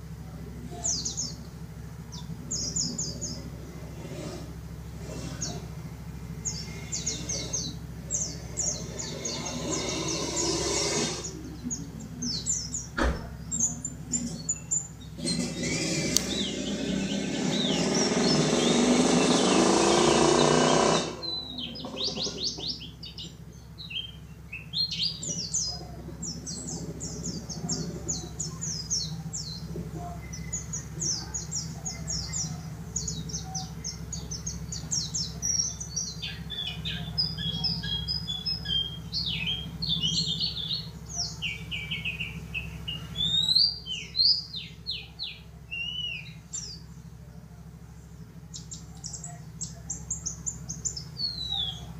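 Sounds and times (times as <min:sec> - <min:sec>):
bird twittering trills: 0:00.2 - 0:51.9
loud rushing noise: 0:15.2 - 0:21.4.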